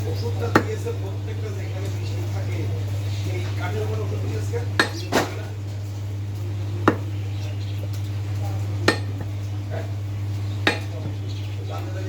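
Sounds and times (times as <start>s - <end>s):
steady low hum: 0.0s - 12.0s
sharp metallic knocks: 6.9s - 7.1s, 8.9s - 9.3s, 10.6s - 11.1s.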